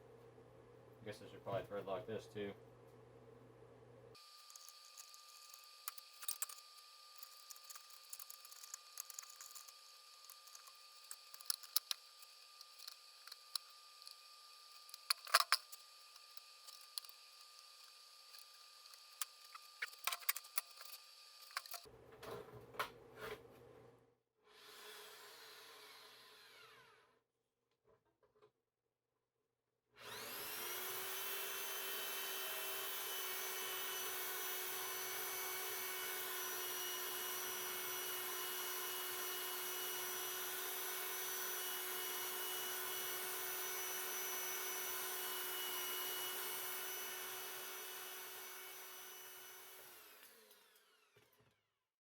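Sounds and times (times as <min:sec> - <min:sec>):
hand tools clicking and tapping: 0:04.3 - 0:21.9.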